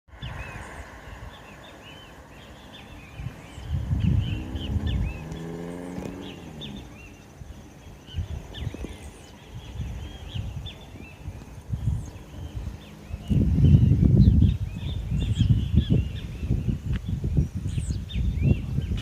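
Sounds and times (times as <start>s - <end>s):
low drone sliding down in pitch: 0.1s - 7.4s
low rumbles: 0.1s - 19.0s
small birds chirping: 0.1s - 19.0s.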